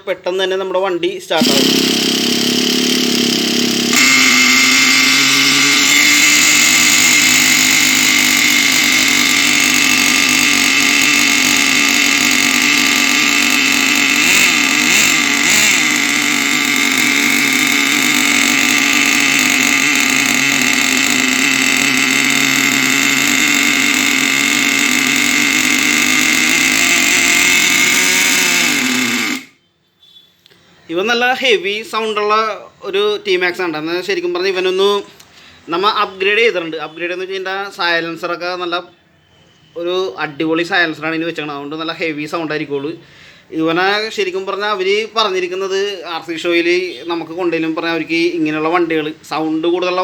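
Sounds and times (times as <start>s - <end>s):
small two-stroke engine running: 1.4s - 29.6s.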